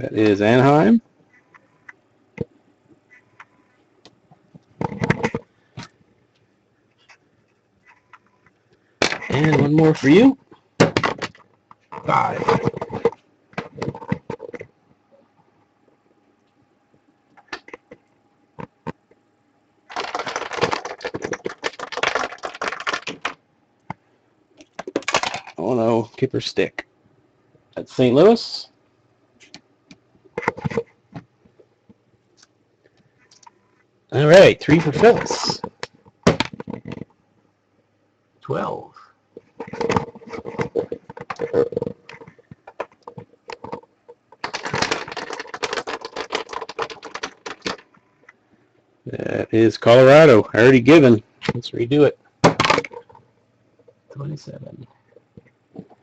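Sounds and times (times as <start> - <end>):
rapid clatter of small hard pieces: 19.9 - 23.4, 24.8 - 25.6, 44.4 - 47.9.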